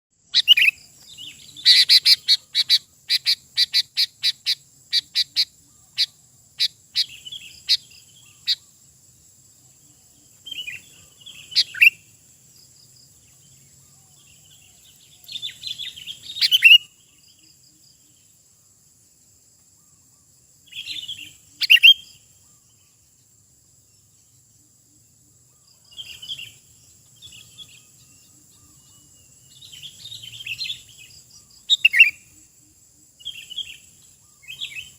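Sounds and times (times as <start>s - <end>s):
bird chattering: 0.4s - 8.6s, 10.5s - 12.0s.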